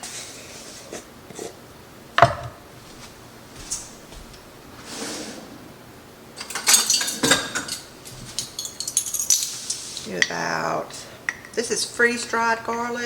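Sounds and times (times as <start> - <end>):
utensils clinking against pot: 6.4 - 10.5.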